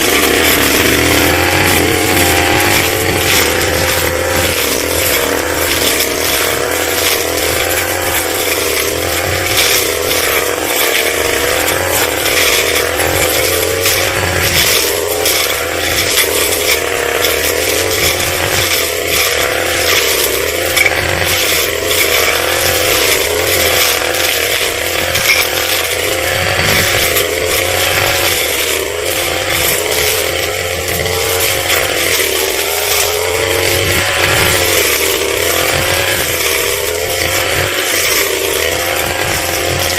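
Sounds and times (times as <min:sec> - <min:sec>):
brush cutter engine high revs: 0:00.0 - 0:39.9.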